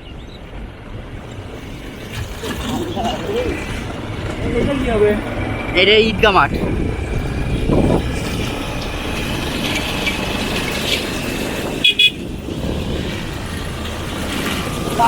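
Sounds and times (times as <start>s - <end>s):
vehicle rumble with road noise: 0.0s - 15.0s
vehicle horn toot: 11.8s - 12.4s.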